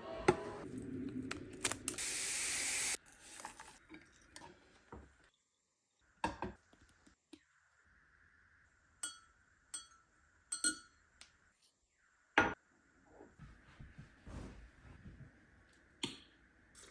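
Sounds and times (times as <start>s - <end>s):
kitchenware clinking: 9.0s - 11.0s
low uneven shuffling: 13.3s - 15.6s.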